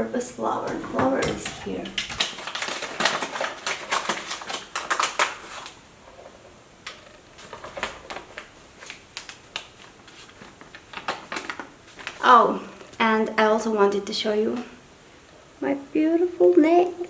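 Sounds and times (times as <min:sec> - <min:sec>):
packaging crinkling and crackling: 0:00.6 - 0:12.4.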